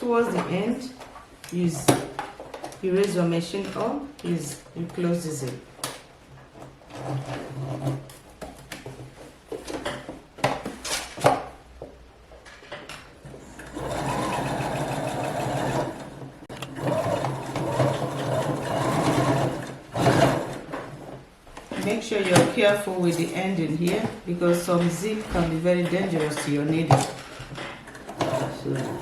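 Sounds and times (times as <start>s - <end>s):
sewing machine stitching: 13.3s - 21.2s, 27.9s - 29.0s.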